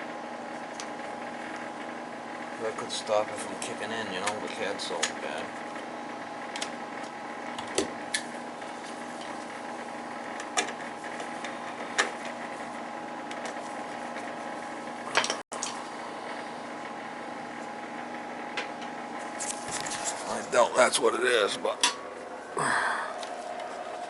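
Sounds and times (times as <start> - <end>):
steady mechanical hum: 0.0 - 24.0.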